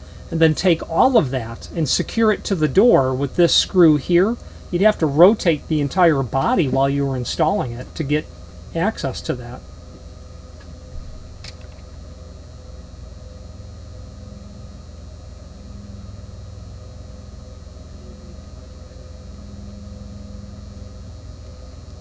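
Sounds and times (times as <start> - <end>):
low electrical hum: 0.0 - 22.0.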